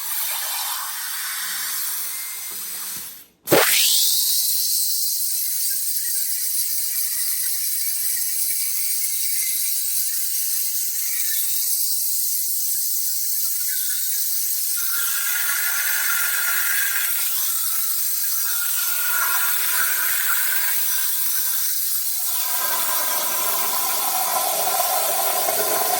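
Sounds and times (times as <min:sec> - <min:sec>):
plasma torch hissing: 0:17.2 - 0:25.9.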